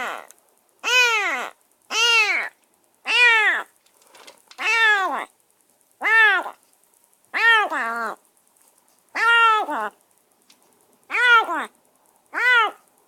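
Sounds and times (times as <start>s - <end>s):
kitten meowing loudly: 0.8s - 2.5s, 3.1s - 3.7s, 4.6s - 5.3s, 6.0s - 6.6s, 7.4s - 8.1s, 9.2s - 9.9s, 11.1s - 11.7s, 12.3s - 12.8s.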